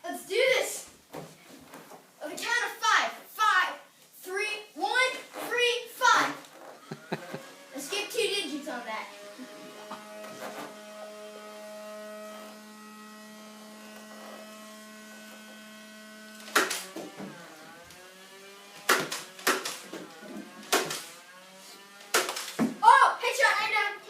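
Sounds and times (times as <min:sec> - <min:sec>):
toy blaster motor whirring: 0:06.4 - 0:22.6
toy darts firing: 0:16.4 - 0:17.0, 0:18.8 - 0:19.9, 0:20.6 - 0:21.2, 0:22.1 - 0:22.7.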